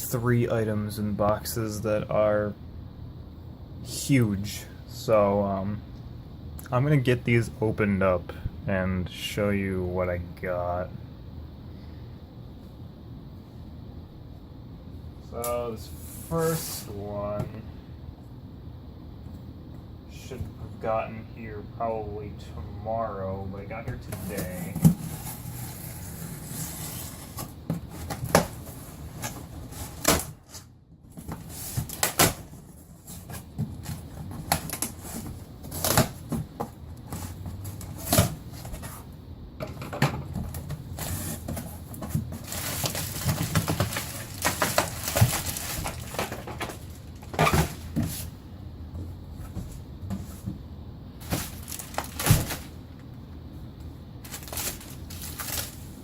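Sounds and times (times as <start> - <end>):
cardboard and packing rustling: 23.6 - 48.4, 49.0 - 52.9, 54.2 - 56.0.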